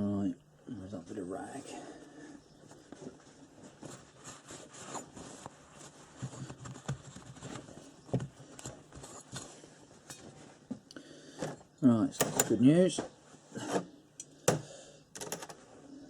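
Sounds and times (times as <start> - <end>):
metal parts clicking and knocking: 12.2 - 12.6, 14.2 - 15.6.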